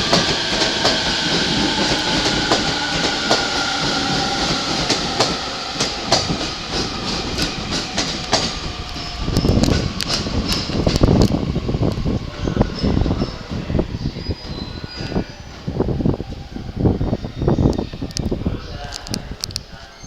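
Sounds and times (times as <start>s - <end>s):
train wheels clacking: 0.0s - 15.3s
low rumble: 0.0s - 17.7s.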